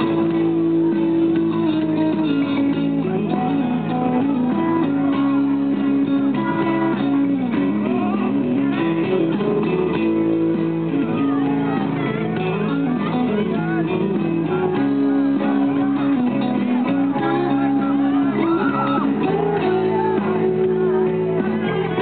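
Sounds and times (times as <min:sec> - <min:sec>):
guitar-led music: 0:00.0 - 0:22.0.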